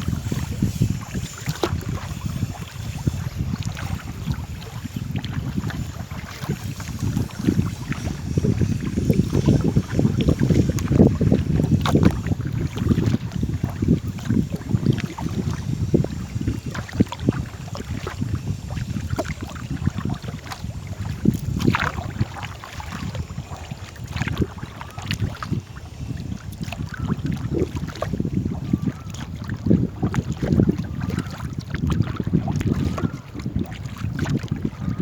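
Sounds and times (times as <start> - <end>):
paddle splashes and boat knocks: 0.0 - 35.0
wind buffeting microphone: 0.0 - 35.0.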